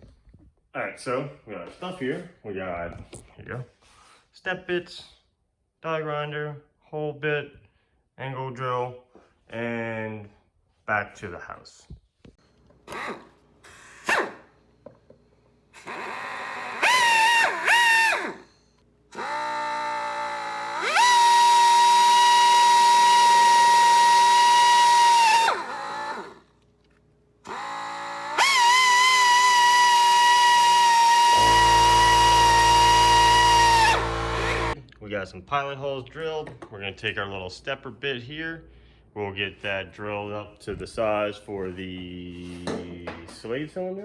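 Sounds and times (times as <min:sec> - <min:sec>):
electric drill whining: 0:15.8 - 0:26.5, 0:27.4 - 0:34.8.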